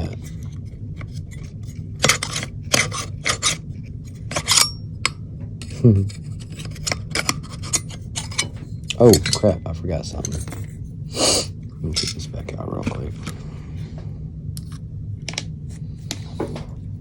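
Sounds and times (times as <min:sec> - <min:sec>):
steady low hum: 0:00.0 - 0:17.0
clicks of plastic and metal parts: 0:00.5 - 0:03.6.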